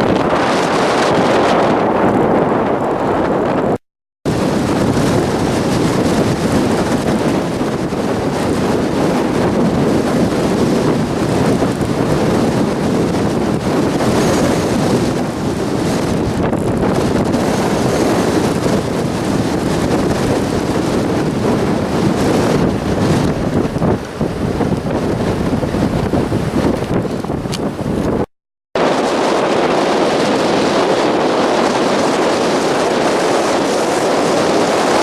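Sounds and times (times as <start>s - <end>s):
blizzard wind buffeting microphone: 0.0s - 35.0s.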